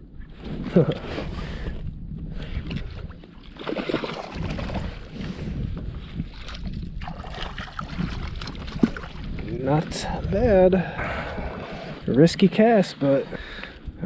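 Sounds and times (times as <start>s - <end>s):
wind rumble on microphone: 0.0s - 14.0s
water splashing: 2.9s - 5.1s, 6.2s - 10.0s.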